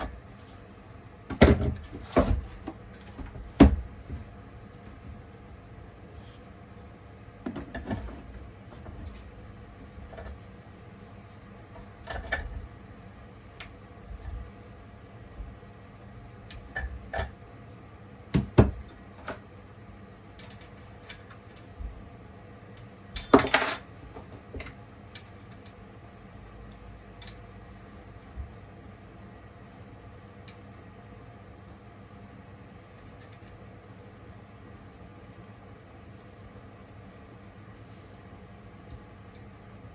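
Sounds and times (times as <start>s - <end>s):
small metal parts clinking: 23.2s - 23.8s.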